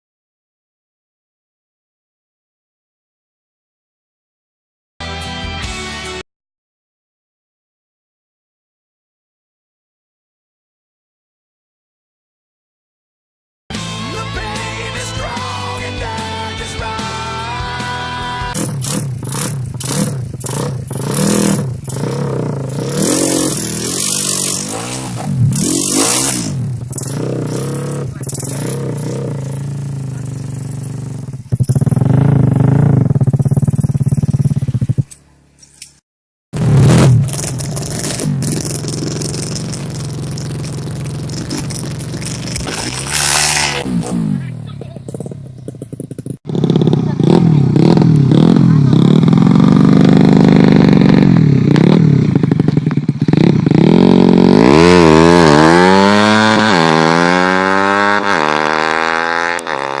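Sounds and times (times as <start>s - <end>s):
motorcycle engine idling and revving: 14.9s - 36.0s, 36.6s - 60.0s.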